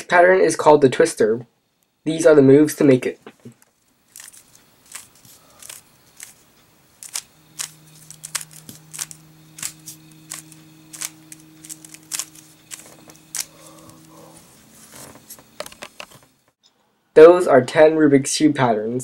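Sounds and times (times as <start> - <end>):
faint low hum: 0.0 - 18.0
puzzle cube plastic clicks: 4.2 - 6.4, 7.0 - 14.2.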